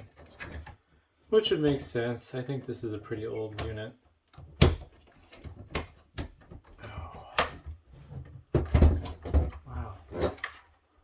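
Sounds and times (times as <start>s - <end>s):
knocks and thumps: 4.6s - 10.4s.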